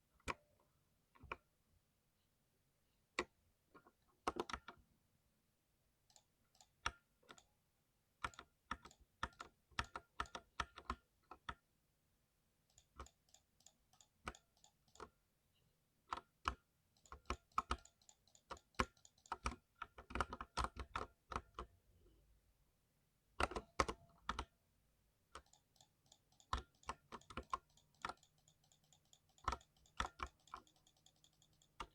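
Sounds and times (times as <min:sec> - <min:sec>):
mechanical keyboard typing: 0:04.2 - 0:04.8, 0:08.2 - 0:11.6, 0:12.7 - 0:15.1, 0:16.1 - 0:21.7, 0:23.4 - 0:24.5, 0:25.3 - 0:31.9.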